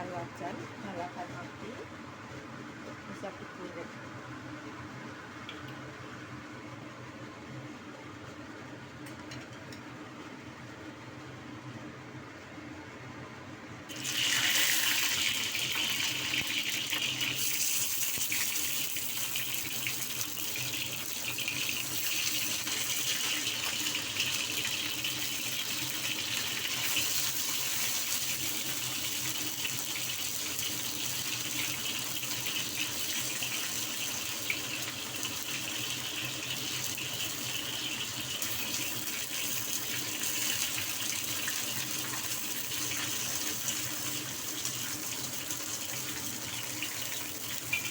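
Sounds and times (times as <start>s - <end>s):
peppers frying in hot oil: 13.9s - 47.9s.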